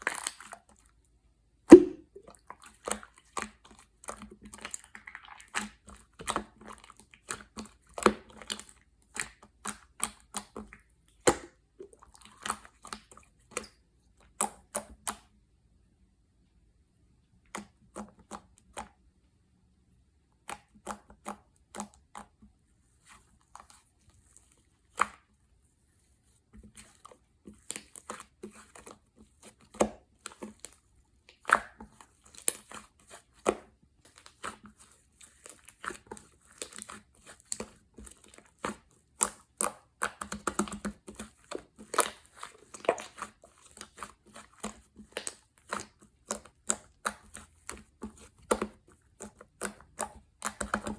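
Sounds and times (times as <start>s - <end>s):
slime squished by hand: 1.7s - 3.7s, 26.7s - 50.9s.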